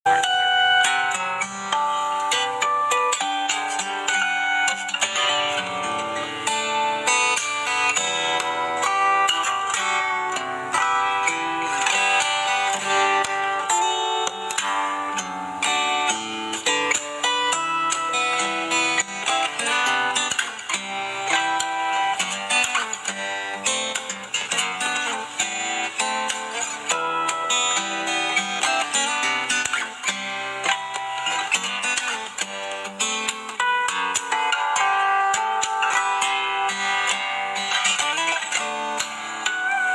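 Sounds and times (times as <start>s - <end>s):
fingerstyle guitar: 0.0s - 39.9s.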